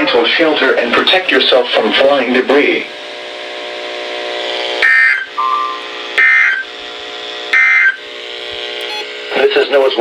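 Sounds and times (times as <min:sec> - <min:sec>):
low buzzing radio hum: 0:00.0 - 0:10.0
screeching digital bursts: 0:04.8 - 0:06.7, 0:07.5 - 0:08.0
short beep: 0:08.9 - 0:09.1.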